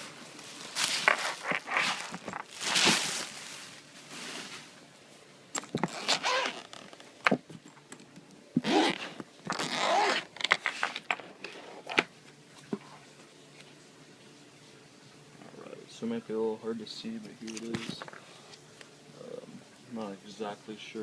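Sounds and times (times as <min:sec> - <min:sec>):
case handling noise: 0:00.8 - 0:03.2, 0:05.6 - 0:12.1
zipper rasping open: 0:01.0 - 0:02.9, 0:05.6 - 0:07.0, 0:08.6 - 0:12.0.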